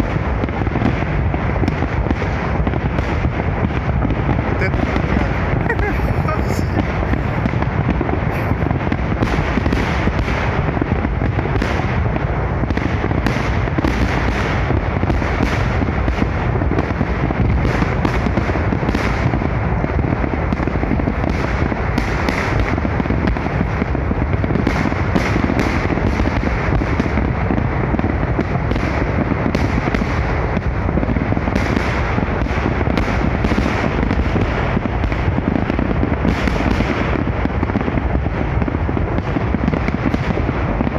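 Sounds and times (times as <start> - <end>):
fireworks bangs and crackles: 0.0 - 40.9.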